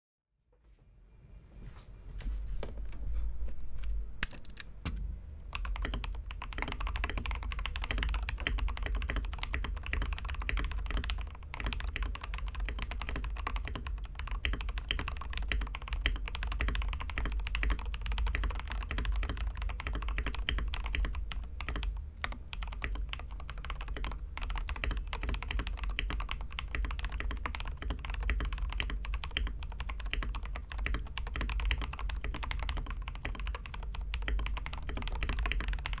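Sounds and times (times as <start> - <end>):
steady low hum: 0.6 - 36.0
fast typing on mechanical keyboard: 4.2 - 4.7, 5.5 - 36.0.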